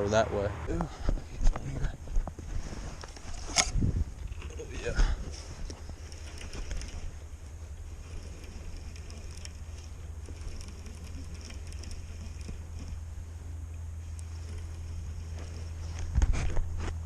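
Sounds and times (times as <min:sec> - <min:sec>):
wind buffeting microphone: 0:01.0 - 0:07.4
faint ticks and rustles: 0:04.1 - 0:17.0.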